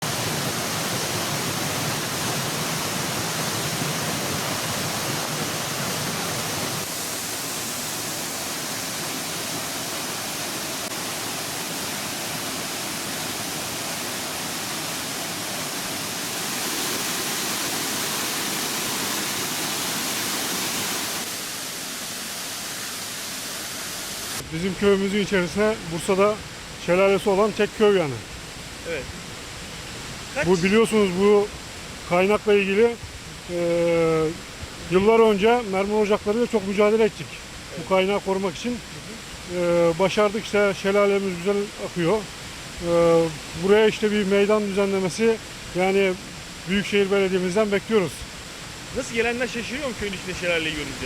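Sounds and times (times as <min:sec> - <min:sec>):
waterfall pouring: 0:00.0 - 0:27.0, 0:48.8 - 0:51.0.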